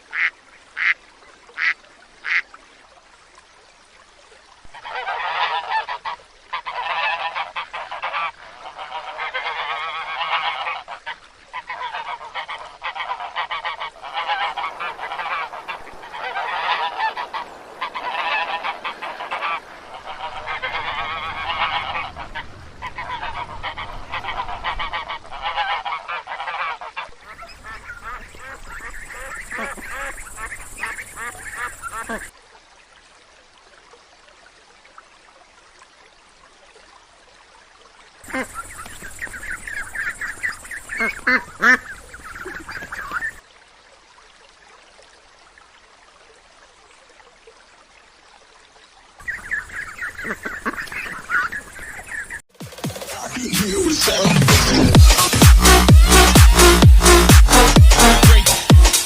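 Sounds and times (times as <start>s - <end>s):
geese honking: 4.8s - 32.3s, 38.3s - 43.4s, 49.2s - 52.4s.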